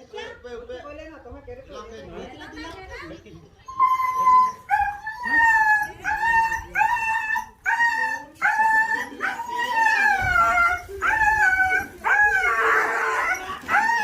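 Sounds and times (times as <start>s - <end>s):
dog whining howls: 3.7s - 14.0s.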